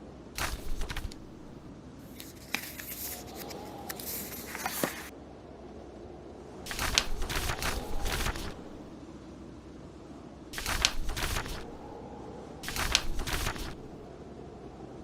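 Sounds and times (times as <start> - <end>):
blizzard wind rushing: 0.0 - 15.0
book pages turning: 0.4 - 5.1, 6.7 - 8.9, 10.6 - 11.8, 12.6 - 14.0.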